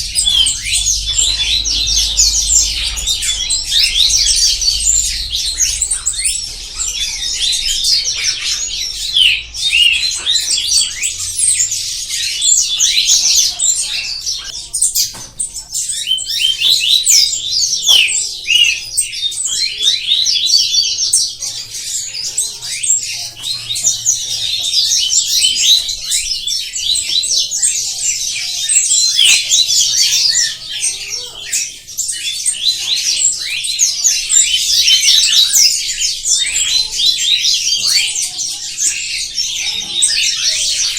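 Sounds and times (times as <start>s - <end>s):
songbirds singing and chirping: 0.0s - 40.9s.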